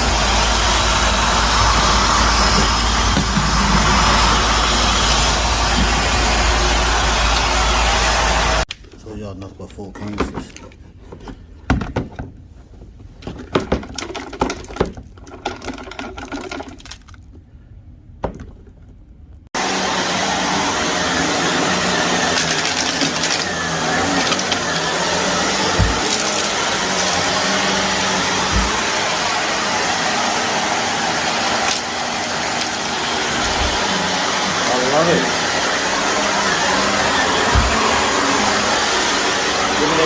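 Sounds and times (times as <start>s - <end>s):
vacuum cleaner running: 0.0s - 8.7s, 19.6s - 40.0s.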